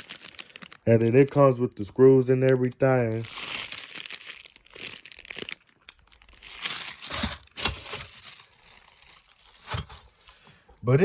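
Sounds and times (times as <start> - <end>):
plastic bag crinkling: 0.0 - 10.5.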